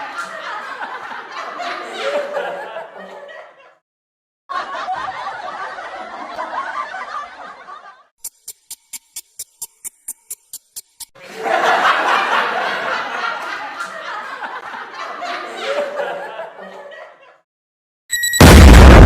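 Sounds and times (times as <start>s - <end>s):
studio audience laughing: 0.0s - 3.8s, 4.5s - 8.1s, 11.2s - 17.5s.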